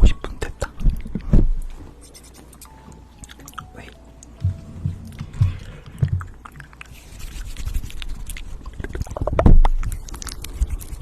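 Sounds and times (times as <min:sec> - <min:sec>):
low thumps: 0:00.8 - 0:01.8, 0:04.4 - 0:06.5
wet mouth clicks and smacks: 0:06.2 - 0:11.0.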